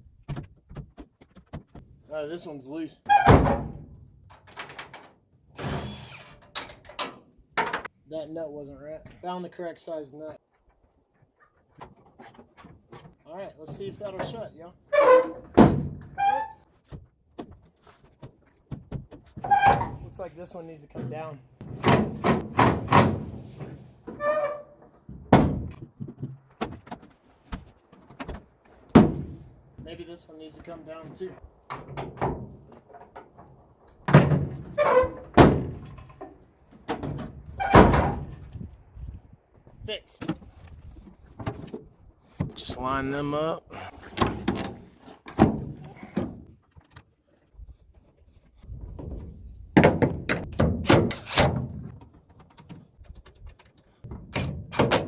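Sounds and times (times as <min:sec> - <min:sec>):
tailgate thunking shut: 0:28.3 - 0:29.5, 0:36.9 - 0:38.4
latch clicks and knocks: 0:54.1 - 0:55.0.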